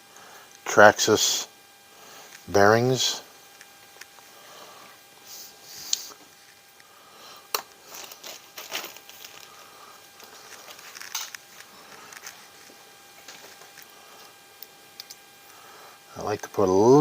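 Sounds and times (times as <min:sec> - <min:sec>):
crinkling and rustling: 0:07.5 - 0:14.4.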